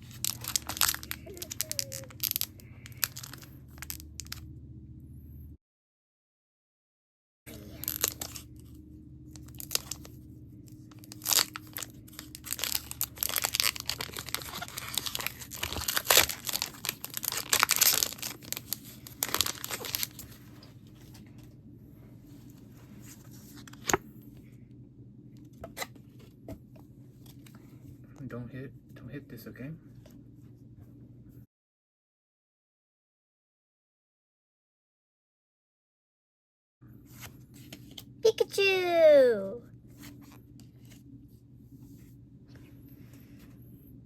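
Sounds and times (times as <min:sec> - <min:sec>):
foil wrapper tearing and crinkling: 0:00.0 - 0:04.4, 0:07.5 - 0:08.5, 0:09.4 - 0:10.1, 0:10.9 - 0:20.4.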